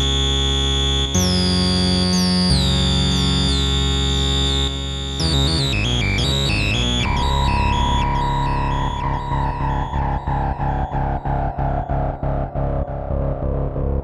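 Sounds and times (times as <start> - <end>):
synthesizer notes: 5.2 - 14.0.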